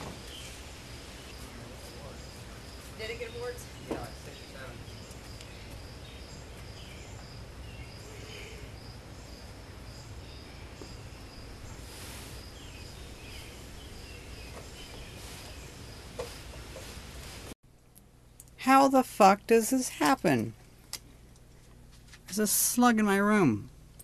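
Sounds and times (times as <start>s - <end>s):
insects chirping: 0.0s - 17.2s.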